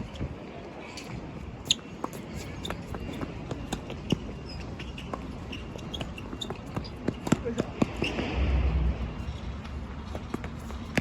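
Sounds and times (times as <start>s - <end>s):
wind rumble on microphone: 0.0s - 3.4s, 7.4s - 11.0s
footsteps on tennis court: 0.7s - 8.3s, 9.2s - 11.0s
taps and scuffs of play: 1.0s - 8.3s, 10.1s - 11.0s.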